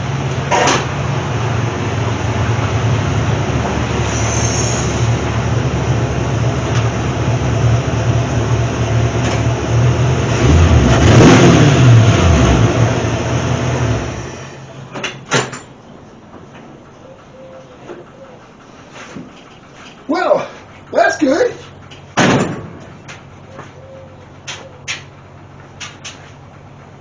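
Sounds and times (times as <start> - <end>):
car engine accelerating: 0.0 - 14.9.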